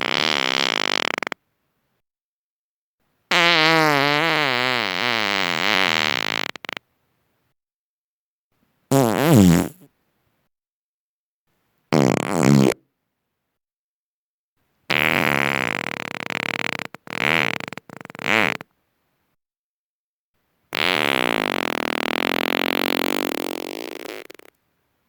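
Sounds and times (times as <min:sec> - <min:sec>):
farts: 0:00.0 - 0:01.4, 0:03.3 - 0:06.8, 0:08.9 - 0:09.9, 0:11.9 - 0:12.8, 0:14.9 - 0:18.7, 0:20.7 - 0:24.6.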